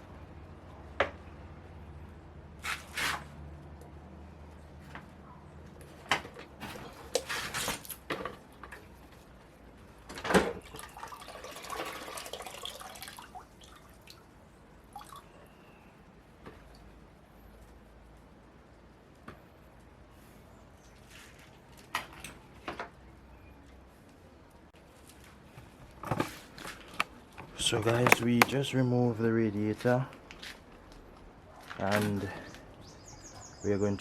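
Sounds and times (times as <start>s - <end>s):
rustle of handled parts: 2.6s - 3.9s, 4.7s - 10.6s, 19.3s - 23.0s, 23.6s - 28.7s
tools clicking and knocking: 26.9s - 28.6s.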